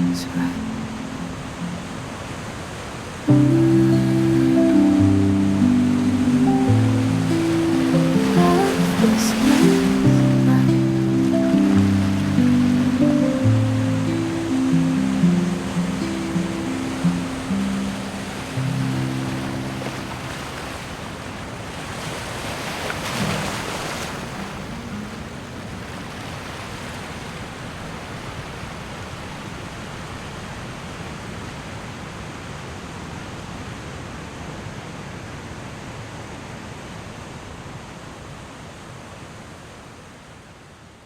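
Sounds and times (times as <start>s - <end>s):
wave breaking: 0.0s - 27.8s
surf hiss: 0.0s - 40.8s.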